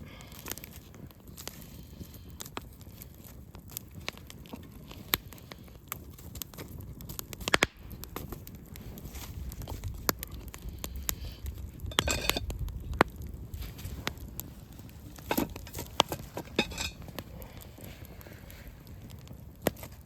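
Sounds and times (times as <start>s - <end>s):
campfire crackling: 0.0s - 20.0s
fire pops: 0.0s - 20.0s
rustling: 2.8s - 12.5s, 13.5s - 19.1s.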